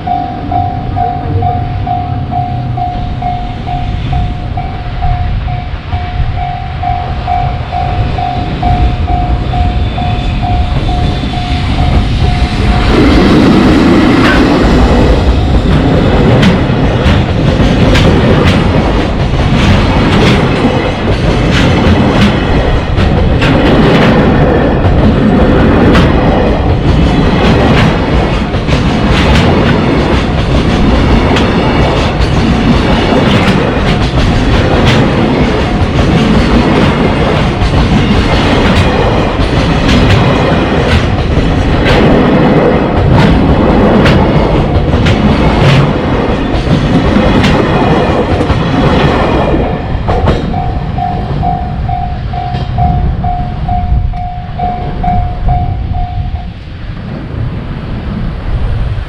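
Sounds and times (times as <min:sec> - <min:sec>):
level-crossing warning bell: 0:00.0 - 0:17.6, 0:30.3 - 0:41.7, 0:44.4 - 0:56.9
train wheels clickety-clack: 0:00.0 - 0:56.7
freight train passing: 0:00.0 - 0:59.0.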